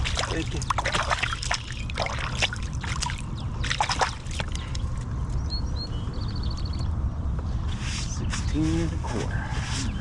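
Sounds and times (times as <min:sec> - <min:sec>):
water sloshing and splashing: 0:00.0 - 0:05.1
bird chirps: 0:03.0 - 0:08.8.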